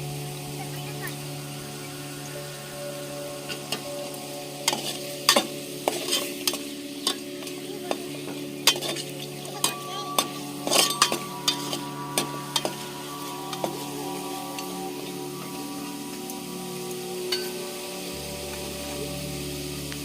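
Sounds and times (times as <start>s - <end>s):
chicken sizzling: 0.0s - 20.0s
low steady hum: 0.0s - 20.0s
spatula scraping pan: 4.6s - 14.3s.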